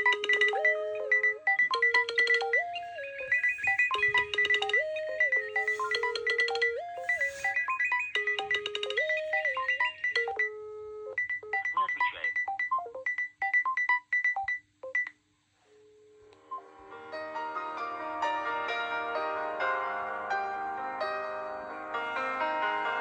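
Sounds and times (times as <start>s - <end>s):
piano-like tune: 0.0s - 10.4s, 16.5s - 23.0s
electronic beeping ringtone: 0.0s - 15.1s.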